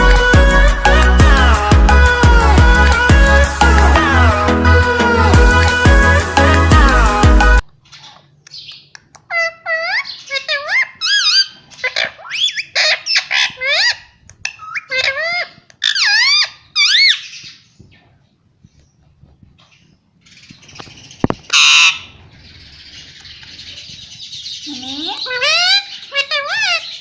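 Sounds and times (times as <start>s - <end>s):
parrots chirping and whistling: 8.0s - 17.6s, 20.4s - 27.0s
parrot screeching: 9.3s - 17.3s, 21.5s - 22.1s, 25.2s - 27.0s.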